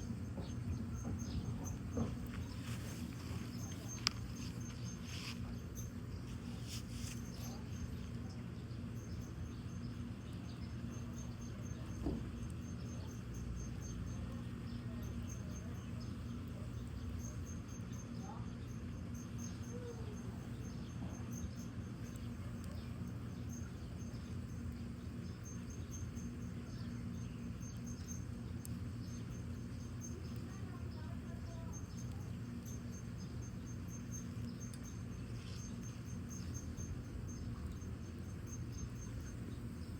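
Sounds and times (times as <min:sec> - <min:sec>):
crickets chirping: 0:00.0 - 0:39.9
low steady rumble: 0:00.0 - 0:39.9
faint ticks: 0:01.2 - 0:08.3, 0:23.5 - 0:39.9.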